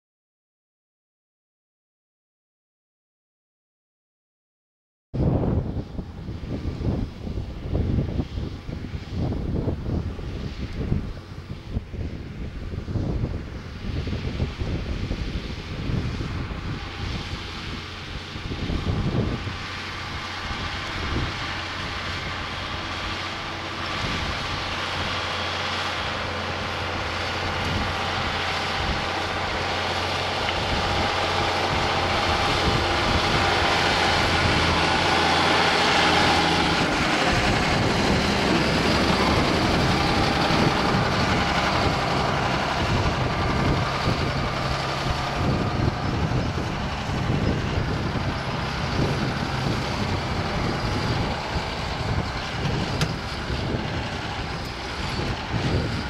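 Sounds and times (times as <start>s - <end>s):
tractor engine under load: 12.6s - 56.0s.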